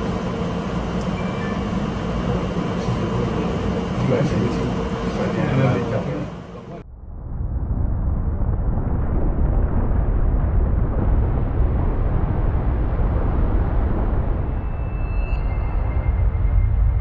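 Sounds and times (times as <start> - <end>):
earthquake low rumble: 6.8 - 17.0.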